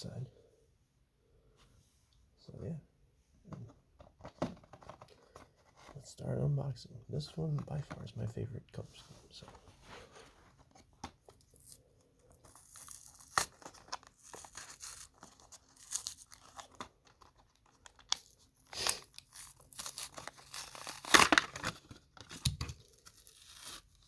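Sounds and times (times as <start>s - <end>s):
cardboard tearing and crinkling: 11.5s - 24.0s.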